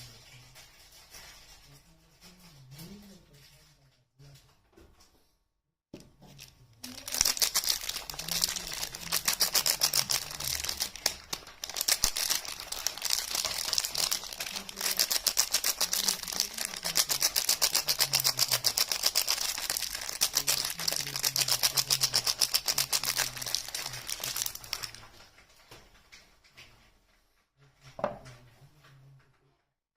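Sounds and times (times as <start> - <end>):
packaging clicking and crinkling: 6.2 - 26.2.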